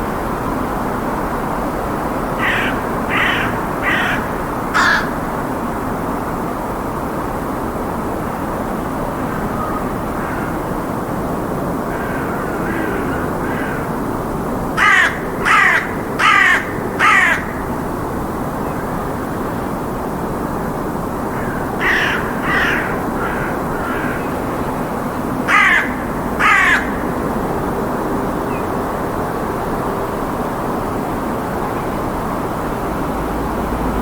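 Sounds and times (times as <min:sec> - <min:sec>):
low city rumble: 0:00.0 - 0:34.0
crows cawing: 0:02.4 - 0:05.3, 0:10.1 - 0:10.7, 0:11.9 - 0:14.1, 0:14.8 - 0:17.9, 0:21.3 - 0:24.5, 0:25.4 - 0:27.2.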